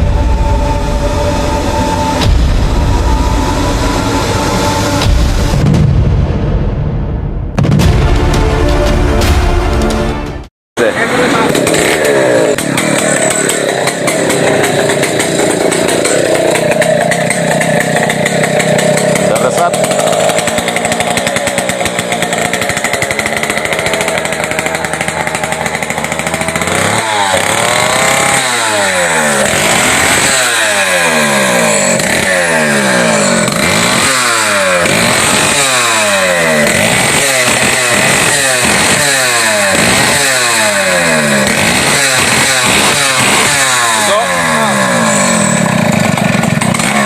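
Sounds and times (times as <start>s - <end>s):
chainsaw engine revving: 0.0s - 5.6s, 10.8s - 47.0s.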